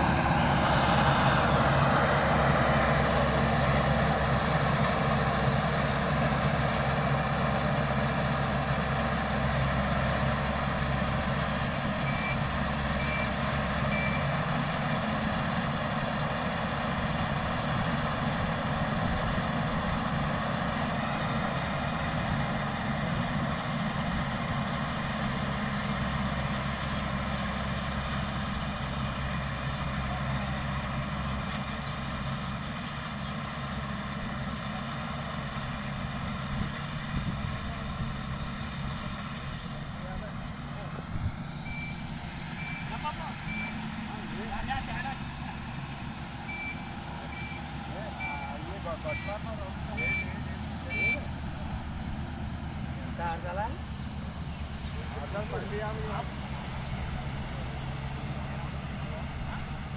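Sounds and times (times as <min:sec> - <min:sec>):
combine harvester engine running: 0:00.0 - 0:59.9
short high beeps: 0:41.7 - 0:42.0, 0:50.0 - 0:51.3.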